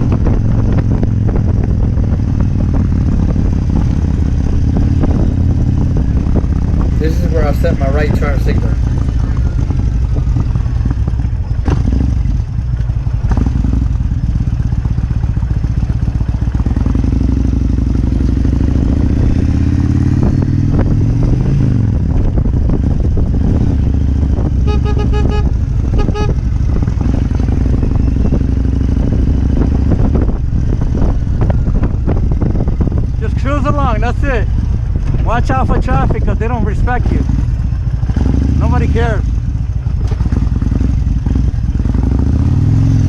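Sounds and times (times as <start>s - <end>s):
motorcycle engine running: 0.0s - 43.0s
short pulsing beep: 24.7s - 26.4s.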